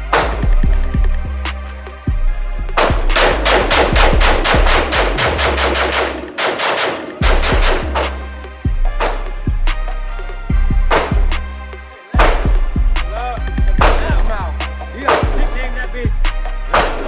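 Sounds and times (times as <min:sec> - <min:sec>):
hip hop music with heavy bass: 0:00.0 - 0:17.0
rapid gunfire: 0:02.8 - 0:08.3, 0:10.9 - 0:11.5, 0:12.2 - 0:12.7, 0:13.8 - 0:14.4, 0:15.1 - 0:15.6, 0:16.8 - 0:17.0.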